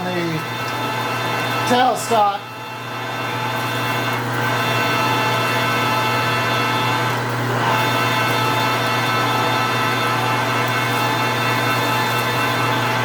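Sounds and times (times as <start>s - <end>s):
metal lathe drilling steel: 0.0s - 13.0s.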